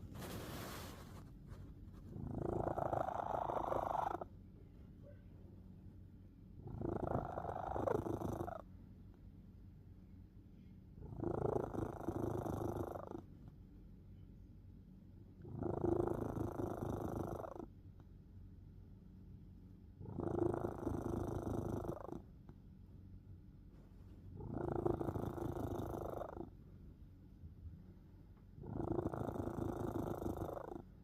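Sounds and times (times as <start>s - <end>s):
cat snoring: 0.0s - 1.2s, 2.0s - 4.3s, 6.6s - 8.7s, 11.0s - 13.3s, 15.4s - 17.7s, 20.0s - 22.3s, 24.3s - 26.5s, 28.6s - 30.9s
faint low rumble: 0.0s - 31.0s.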